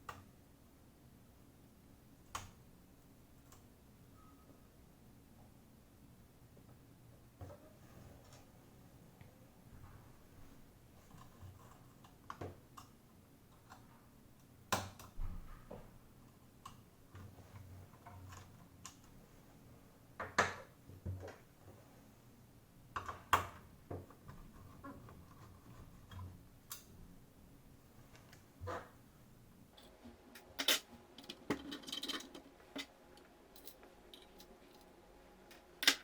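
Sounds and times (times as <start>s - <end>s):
small tools and parts clicking: 29.8s - 36.0s.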